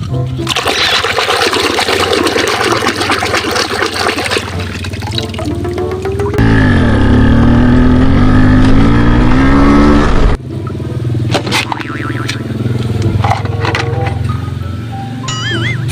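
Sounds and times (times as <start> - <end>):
vehicle engine revving: 6.3 - 10.4.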